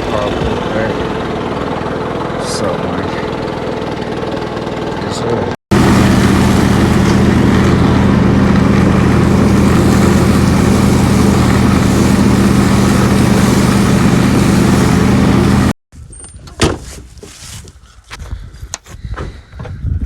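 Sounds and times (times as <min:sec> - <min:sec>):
engine running steadily: 0:00.0 - 0:15.8.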